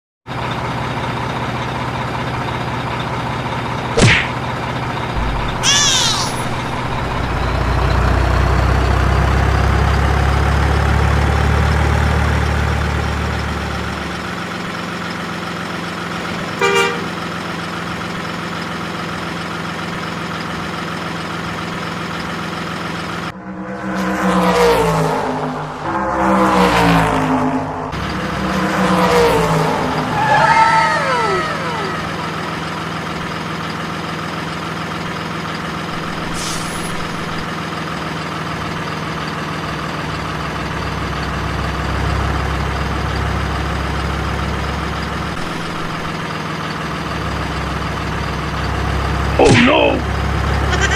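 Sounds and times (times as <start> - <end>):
truck engine drone: 0.3 - 50.9
quick falling tones: 5.2 - 8.4
truck horn toots: 16.5 - 17.3, 50.7 - 50.9.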